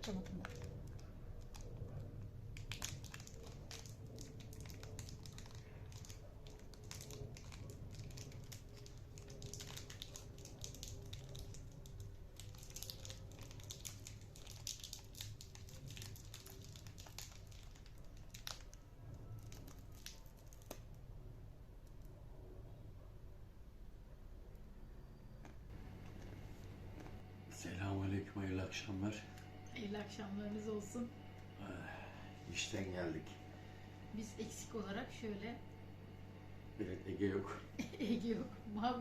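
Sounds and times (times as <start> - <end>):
plastic wrapper crinkling: 0.0 - 21.0.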